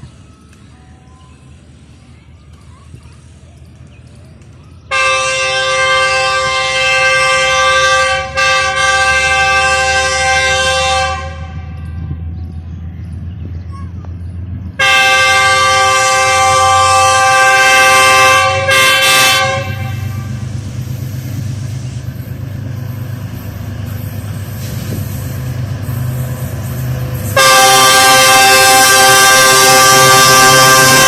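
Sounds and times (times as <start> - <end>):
locomotive engine and train rumble: 0.0 - 31.0
locomotive horn blasts: 4.9 - 12.0, 14.8 - 20.5, 27.3 - 31.0.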